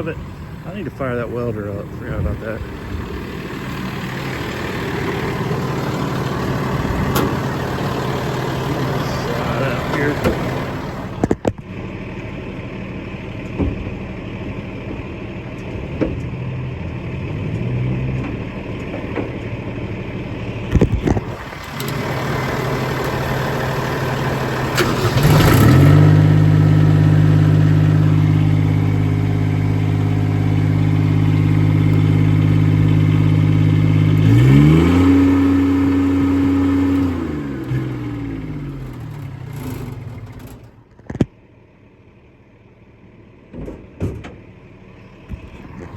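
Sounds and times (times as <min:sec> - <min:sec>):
welder engine running: 0:00.0 - 0:11.3, 0:21.1 - 0:40.8.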